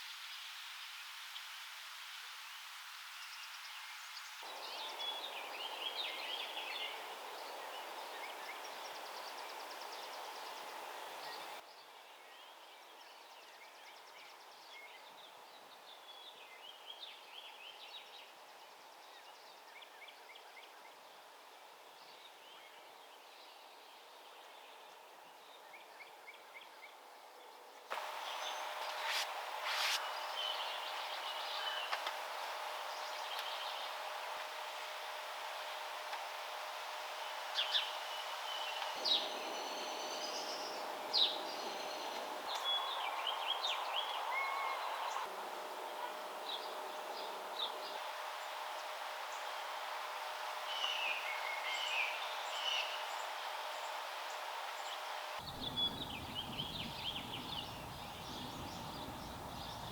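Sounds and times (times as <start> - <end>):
faint steady hum: 0.0 - 11.6, 27.4 - 59.9
outdoor background noise: 0.0 - 59.9
small birds chirping: 3.3 - 11.6, 27.9 - 59.9.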